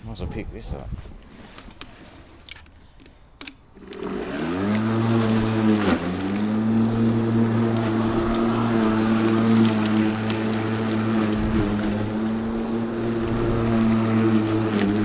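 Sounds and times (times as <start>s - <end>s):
clicks: 1.5s - 5.3s
electric lawn mower motor humming: 3.8s - 15.0s.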